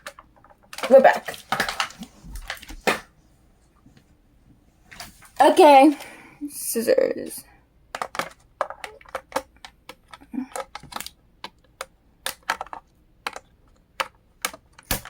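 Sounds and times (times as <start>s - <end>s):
hands clicking plastic packaging: 0.0s - 3.1s, 7.9s - 15.0s.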